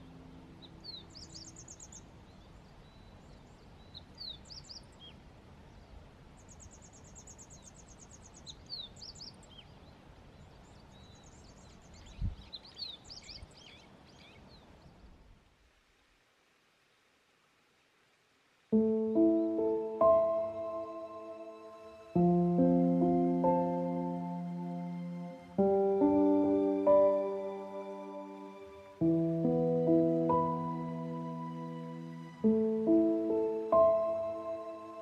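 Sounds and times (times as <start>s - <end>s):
birds singing: 0.0s - 15.2s
background hiss: 0.0s - 35.0s.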